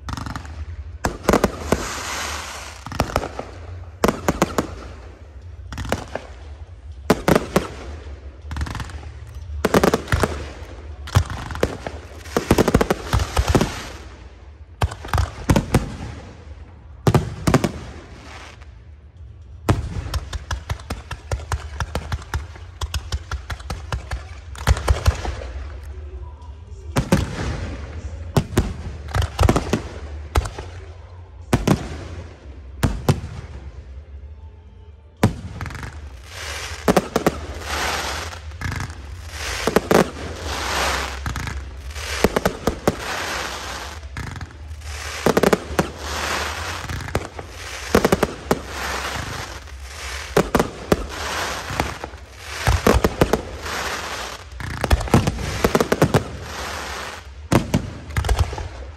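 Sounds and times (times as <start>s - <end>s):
fireworks bangs: 0.0s - 18.7s, 35.2s - 58.9s
fireworks crackling: 0.0s - 34.1s, 35.2s - 58.9s.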